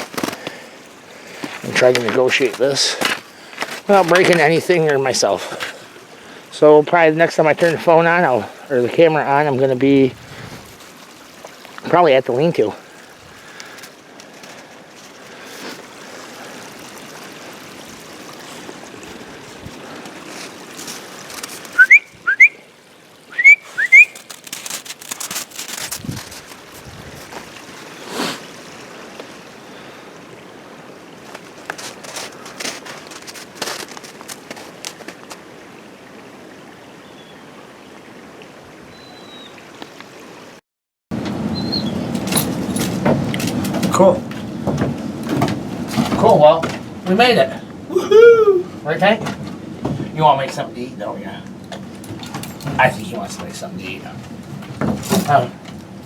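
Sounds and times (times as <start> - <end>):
faint steady hiss: 0.0 - 40.6, 41.8 - 56.0
short rising whistles: 21.8 - 22.6, 23.3 - 24.3, 41.5 - 42.1
clicks and rustling: 24.0 - 27.7, 42.1 - 46.9, 51.4 - 56.0.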